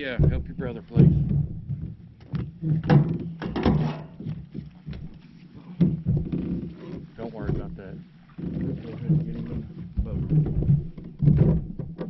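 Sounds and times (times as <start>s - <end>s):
knocks and thumps on boat: 0.0s - 12.0s.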